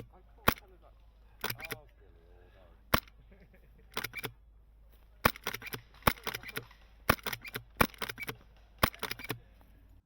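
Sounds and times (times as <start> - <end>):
airsoft gun shots: 5.2 - 9.4.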